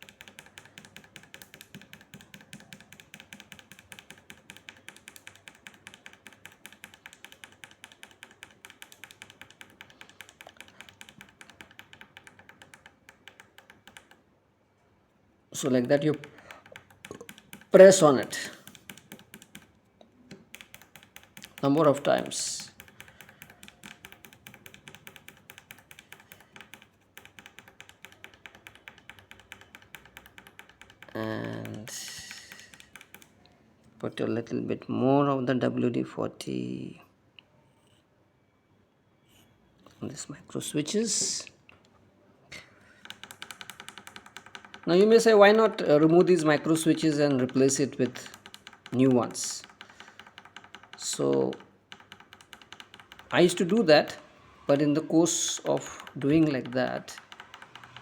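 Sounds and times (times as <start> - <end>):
micro switches clicking rapidly: 43.0 - 58.0.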